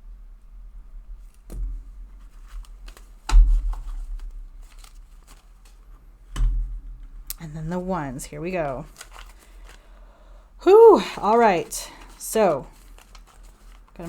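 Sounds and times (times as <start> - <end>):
banknotes rustling: 1.2 - 6.0, 7.6 - 10.1, 10.7 - 14.0
dull thumps: 3.2 - 4.6.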